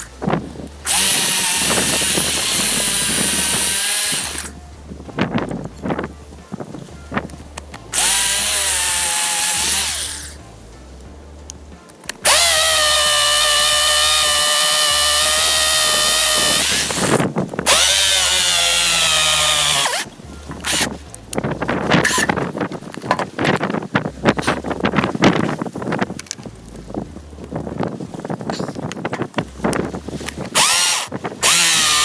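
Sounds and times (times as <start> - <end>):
wind: 0.0 - 32.0
hammer drill boring into concrete: 0.9 - 4.5, 7.9 - 10.4, 12.2 - 20.9, 30.6 - 32.0.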